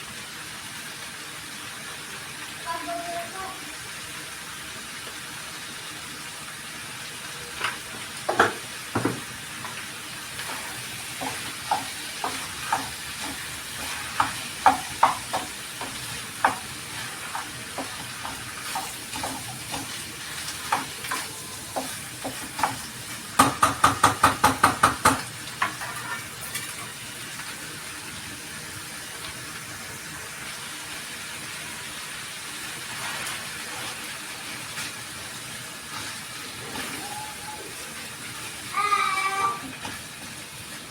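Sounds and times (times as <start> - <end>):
vegetables sizzling in a pan: 0.0 - 40.9
utensil knocking against pan: 8.3 - 9.3, 14.2 - 16.7, 23.4 - 25.8.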